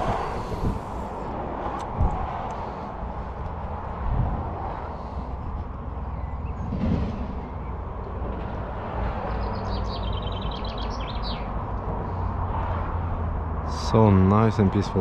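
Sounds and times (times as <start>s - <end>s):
low outdoor rumble: 0.0s - 10.5s.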